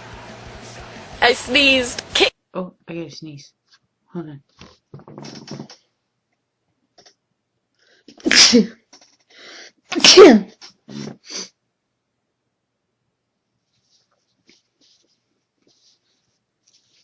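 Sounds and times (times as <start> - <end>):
woman sneezing: 8.2 - 8.9, 9.9 - 11.5.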